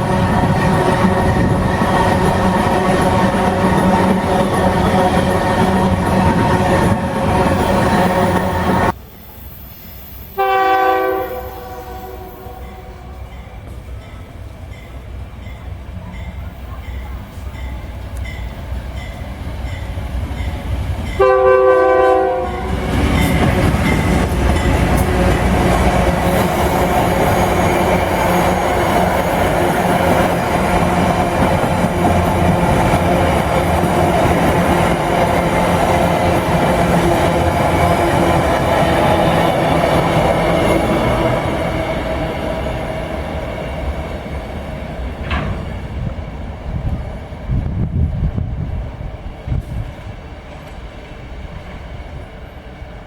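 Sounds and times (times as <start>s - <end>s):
train wheels rumbling on rails: 0.0s - 53.0s
train air horn blast: 10.3s - 13.3s, 21.2s - 22.8s.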